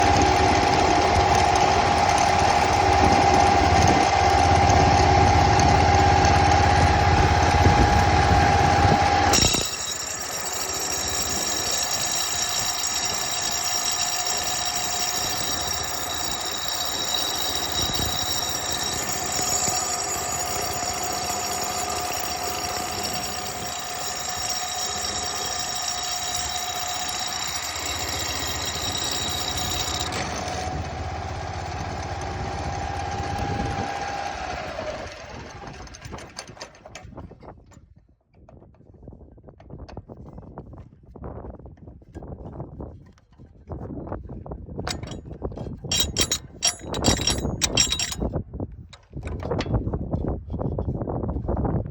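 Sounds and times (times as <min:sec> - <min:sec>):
garden tractor whining: 0:00.0 - 0:37.2, 0:44.9 - 0:48.3.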